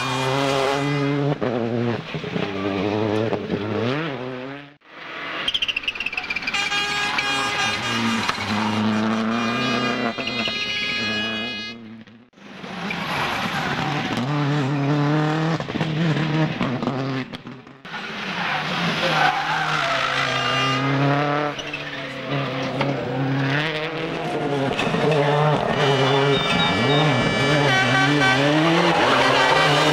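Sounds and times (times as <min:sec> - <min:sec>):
rally car engines at high revs: 0:00.0 - 0:05.5, 0:07.1 - 0:29.9
tyre squeal: 0:18.4 - 0:22.8, 0:24.7 - 0:29.9.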